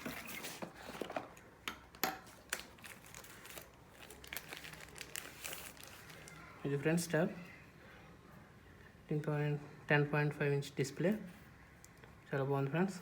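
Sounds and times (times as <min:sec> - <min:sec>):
packaging rustle: 0:02.3 - 0:06.5.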